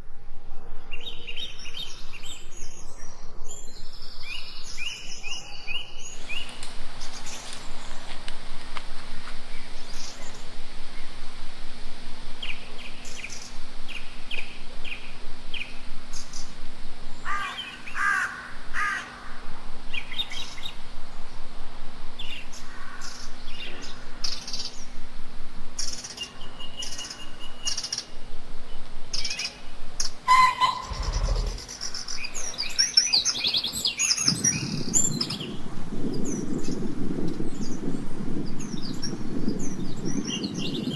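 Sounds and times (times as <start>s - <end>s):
birds chirping: 6.0s - 35.5s
harsh low bird calls: 6.1s - 35.5s
whistled bird note: 29.1s - 34.7s.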